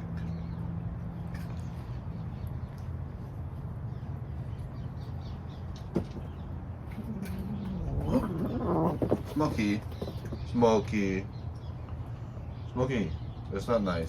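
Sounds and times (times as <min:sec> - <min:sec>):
steady low hum: 0:00.0 - 0:14.0
cat yowling: 0:07.0 - 0:09.3.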